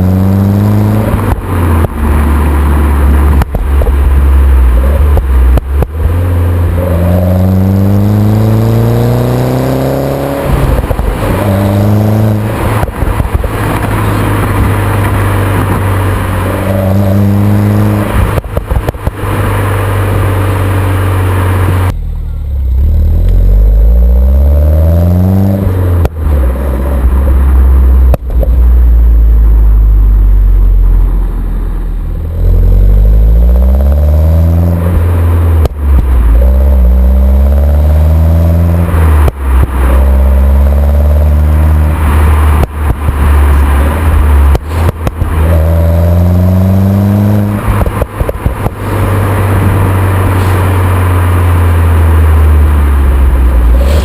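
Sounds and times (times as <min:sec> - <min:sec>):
car engine accelerating: 0:00.0 - 0:54.0
exhaust pops and bangs: 0:03.3 - 0:06.3, 0:10.5 - 0:11.6, 0:12.3 - 0:16.2, 0:18.0 - 0:19.4, 0:27.0 - 0:28.8, 0:34.9 - 0:36.5, 0:42.1 - 0:45.6, 0:47.6 - 0:50.8.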